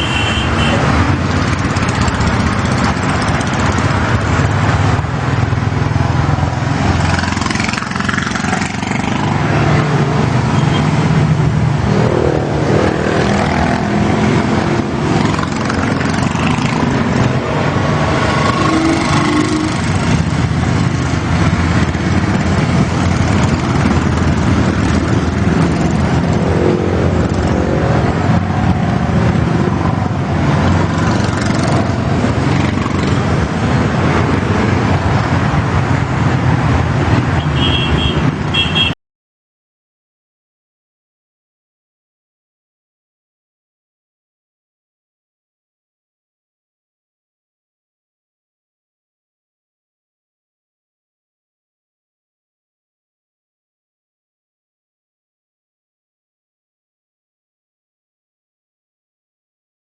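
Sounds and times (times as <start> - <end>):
vehicle horns: 0.0 - 1.0, 18.3 - 19.8, 37.4 - 39.0
motorcycle engine running: 0.0 - 9.3
traffic: 0.0 - 39.0.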